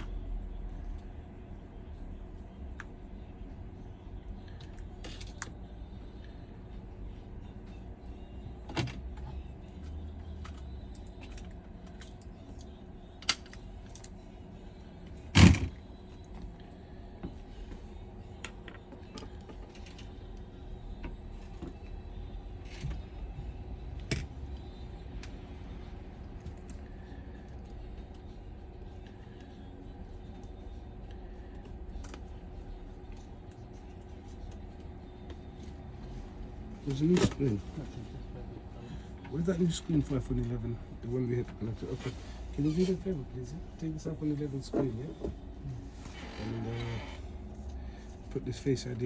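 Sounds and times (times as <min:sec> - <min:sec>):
steady low hum: 0:00.0 - 0:49.0.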